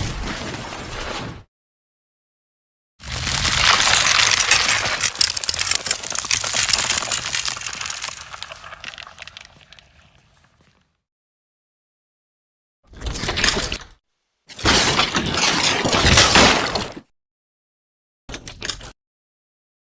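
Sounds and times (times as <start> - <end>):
ice cracking and splitting: 3.0 - 10.6.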